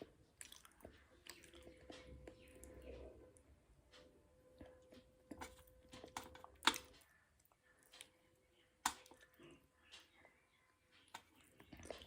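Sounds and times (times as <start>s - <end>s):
mouth clicks and chewing: 0.0s - 3.1s, 11.1s - 12.0s.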